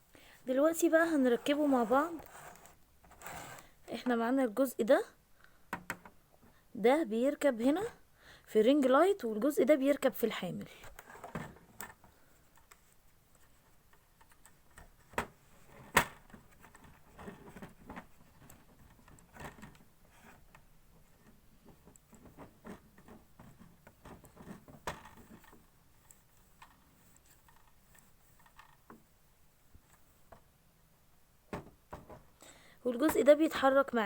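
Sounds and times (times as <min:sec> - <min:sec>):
clicks and knocks of parts handled: 0:10.8 - 0:29.1.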